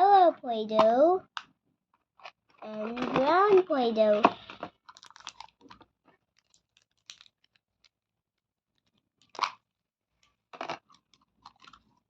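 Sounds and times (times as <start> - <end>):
plastic packaging crunch: 4.4 - 7.9, 10.5 - 12.0
plastic packaging clicks: 4.4 - 8.0.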